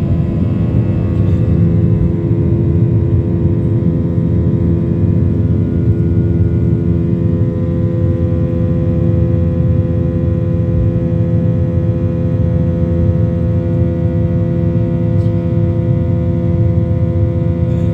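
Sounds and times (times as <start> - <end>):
steady engine tones: 0.0 - 9.1
jet engines rumbling in cabin: 0.0 - 17.9.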